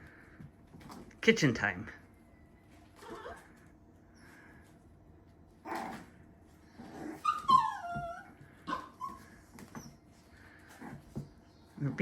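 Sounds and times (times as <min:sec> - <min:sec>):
puppies yipping and whimpering: 0:03.0 - 0:03.5, 0:05.6 - 0:11.1.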